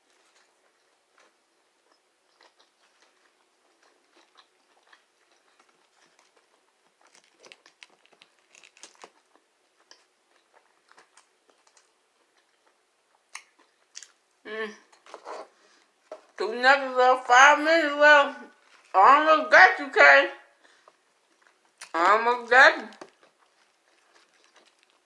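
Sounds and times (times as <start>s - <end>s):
chewing mouth clicks: 23.0s - 25.0s.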